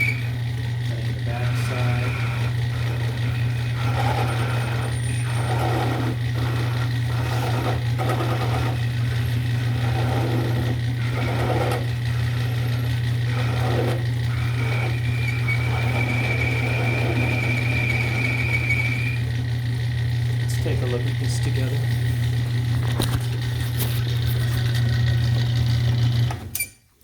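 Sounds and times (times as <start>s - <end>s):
cutting tool scraping metal: 0.0s - 0.5s, 1.2s - 19.4s
thin high whine: 0.0s - 6.1s, 14.3s - 19.3s
lathe motor hum: 0.0s - 26.5s.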